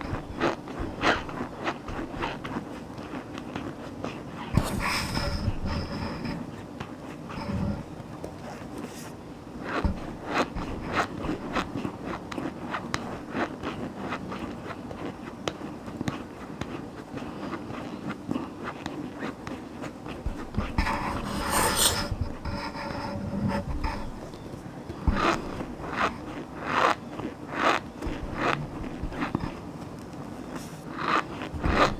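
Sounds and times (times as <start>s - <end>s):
chewing and crunching: 0.0s - 22.5s, 23.7s - 31.9s
mouth noises: 19.2s - 31.9s.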